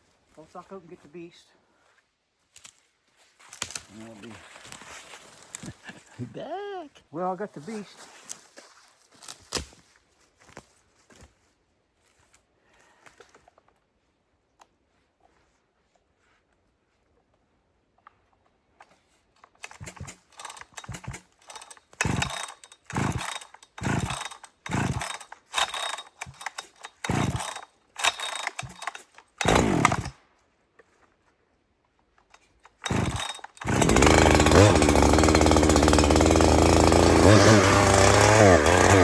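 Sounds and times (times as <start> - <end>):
chainsaw starter cord pulls: 18.8 - 30.2, 32.2 - 39.0
chainsaw engine running: 19.6 - 30.2, 32.7 - 39.0.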